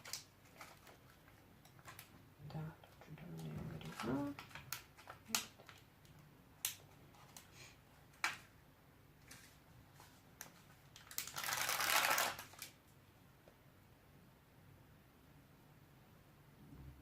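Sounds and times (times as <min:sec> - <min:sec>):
craft materials rustle: 0:00.0 - 0:02.2.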